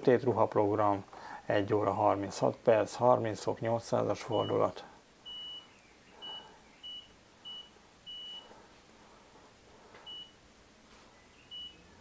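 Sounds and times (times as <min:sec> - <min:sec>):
washing machine beeps: 0:04.3 - 0:04.7, 0:05.3 - 0:08.5, 0:10.1 - 0:10.4, 0:11.5 - 0:11.9.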